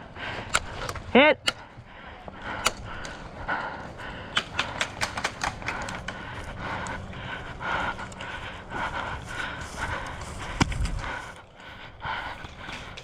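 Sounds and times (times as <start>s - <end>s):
rustling movement: 0.0s - 13.0s
airsoft guns firing: 4.2s - 6.2s.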